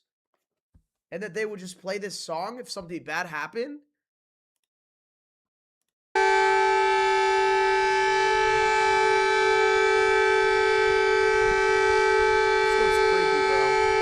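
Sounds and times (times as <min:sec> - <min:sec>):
warning siren steady tone: 0:06.2 - 0:14.0.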